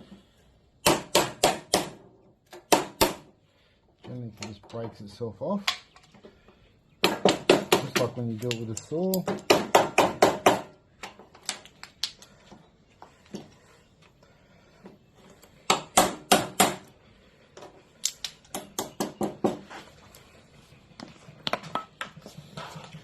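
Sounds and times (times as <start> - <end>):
hammer driving chisel into wood: 15.7 - 16.9.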